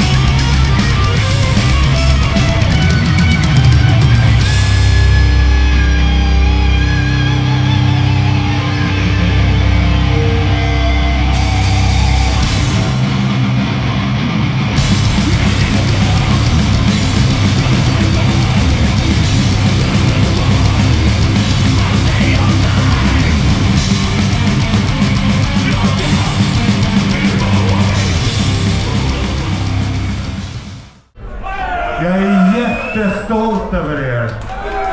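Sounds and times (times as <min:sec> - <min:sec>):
drums and cymbals: 0:00.0 - 0:06.1, 0:11.4 - 0:14.1, 0:14.7 - 0:31.1
distorted guitars and bass: 0:00.0 - 0:31.1.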